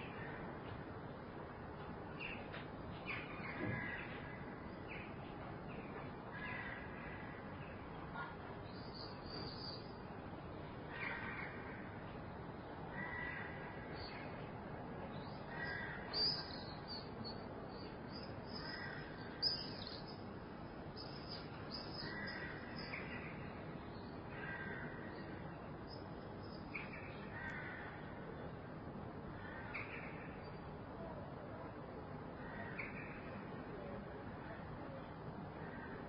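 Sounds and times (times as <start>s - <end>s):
birds calling: 15.2s - 28.0s.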